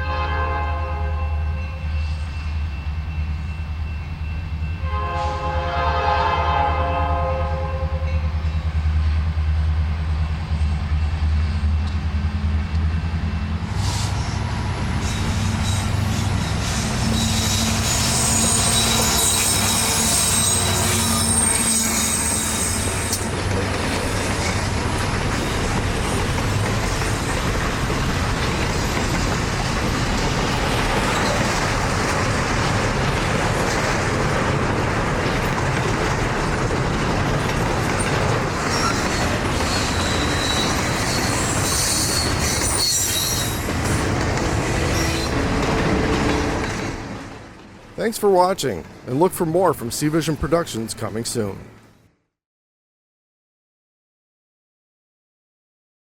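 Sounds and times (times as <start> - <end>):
train wheels rumbling on rail: 1.0 - 49.2
high-pitched wheel squeal: 15.0 - 23.2, 38.7 - 43.7.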